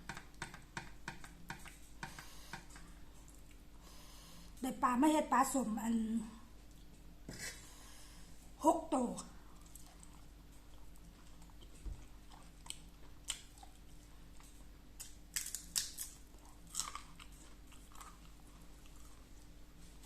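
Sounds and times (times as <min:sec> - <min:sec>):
person chewing crunchy food: 0:09.4 - 0:20.0.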